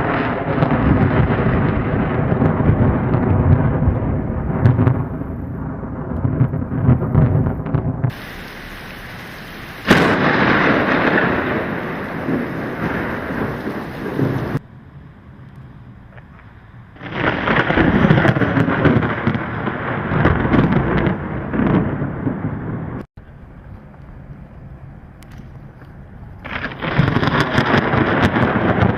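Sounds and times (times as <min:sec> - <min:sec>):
thunder rumbling: 0:00.0 - 0:28.9
steady hiss: 0:08.1 - 0:14.6.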